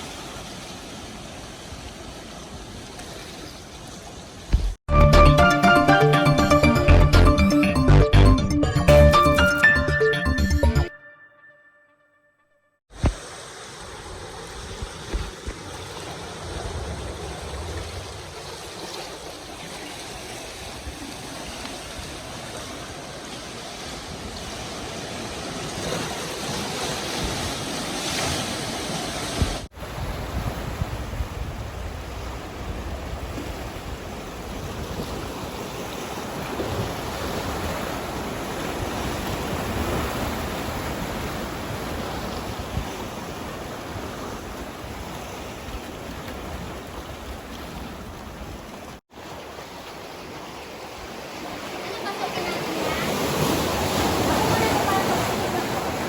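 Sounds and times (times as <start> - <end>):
wind buffeting microphone: 29.4 - 37.7.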